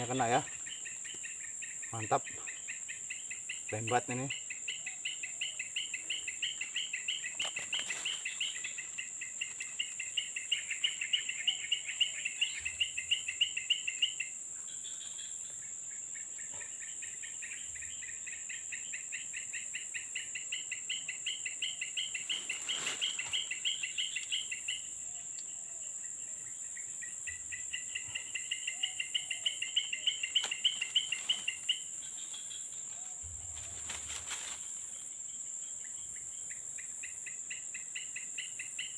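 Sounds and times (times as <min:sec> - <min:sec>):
insect high-pitched drone: 0:00.0 - 0:38.9
insect rapid pulsing chirp: 0:00.0 - 0:38.9.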